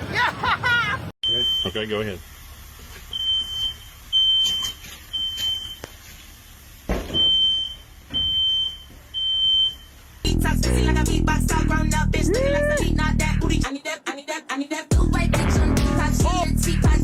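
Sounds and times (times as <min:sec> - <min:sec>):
smoke alarm beeping: 0:01.2 - 0:01.8, 0:03.1 - 0:05.8, 0:07.2 - 0:09.9.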